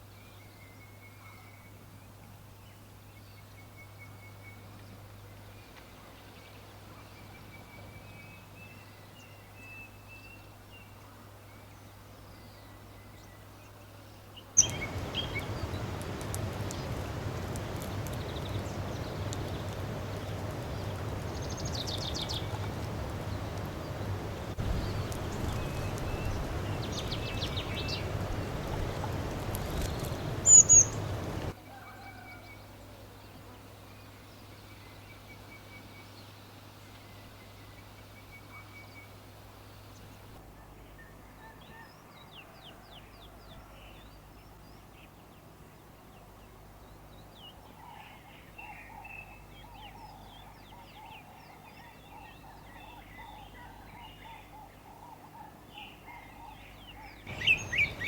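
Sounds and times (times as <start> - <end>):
birds chirping and whistling: 14.6 - 31.6, 57.3 - 58.0
loud sharp bird calls: 14.6 - 31.6, 55.4 - 58.0
steady low hum: 14.6 - 31.6.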